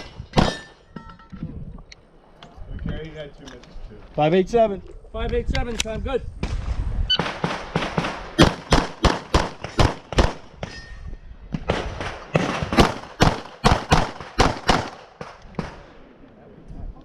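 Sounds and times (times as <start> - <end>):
rapid pistol shots: 7.2 - 10.6, 11.7 - 15.9.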